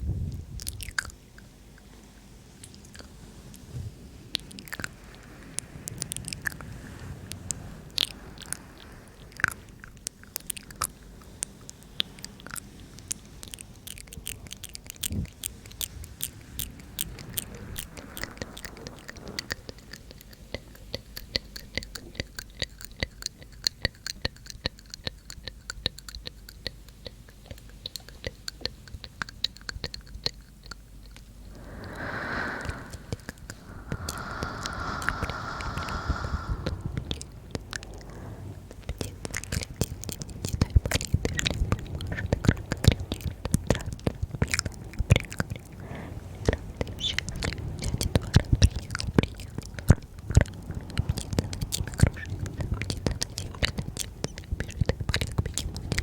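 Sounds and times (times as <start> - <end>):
wet tongue and lip clicks: 0.5 - 1.5, 7.5 - 37.9, 38.7 - 45.8, 46.4 - 56.0
short breath: 31.4 - 38.6.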